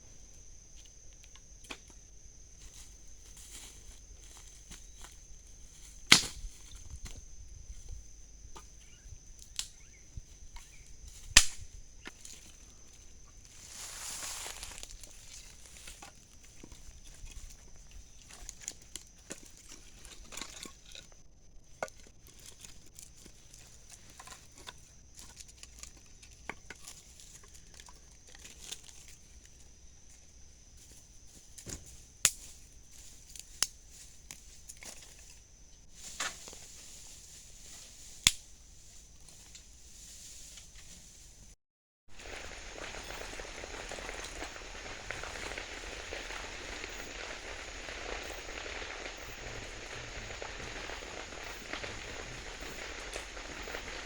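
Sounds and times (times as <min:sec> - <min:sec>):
night insects trilling: 0:00.0 - 0:41.4, 0:42.1 - 0:54.0.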